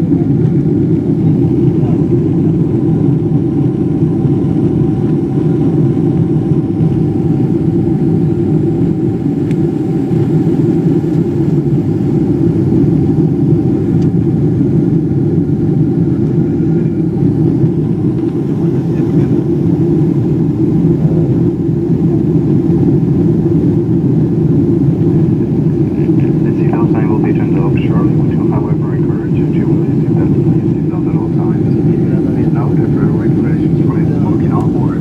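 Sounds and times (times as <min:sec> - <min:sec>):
faint steady whine: 0:00.0 - 0:35.0
jet engines droning in cabin: 0:00.0 - 0:35.0.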